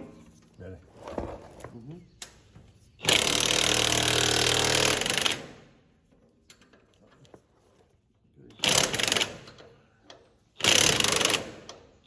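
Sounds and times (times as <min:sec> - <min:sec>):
impact wrench running a bolt: 0:03.1 - 0:05.7, 0:08.6 - 0:09.8, 0:10.6 - 0:11.9.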